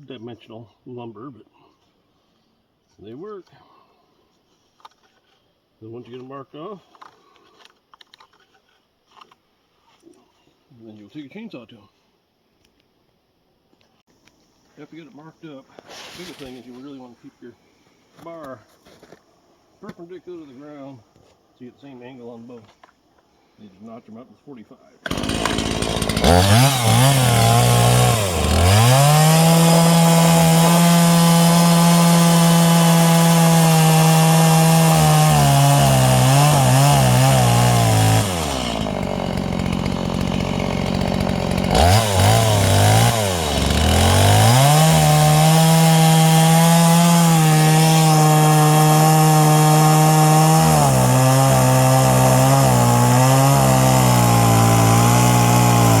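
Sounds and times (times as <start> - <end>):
chainsaw cutting logs: 25.0 - 56.0.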